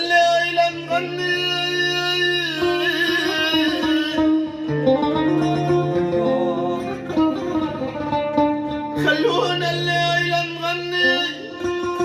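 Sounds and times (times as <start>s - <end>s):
plucked string instrument: 0.0s - 12.0s.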